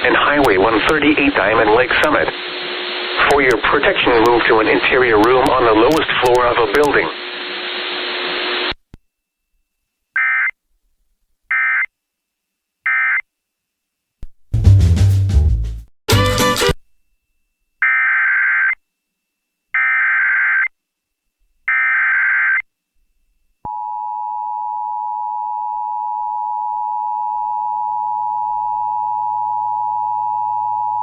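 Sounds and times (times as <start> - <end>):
broadcast audio snippet: 0.0 - 7.5.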